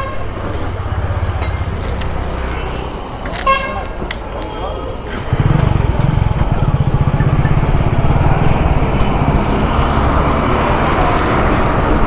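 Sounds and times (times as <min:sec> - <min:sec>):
street traffic: 0:00.0 - 0:12.0
motorcycle engine running: 0:05.0 - 0:12.0.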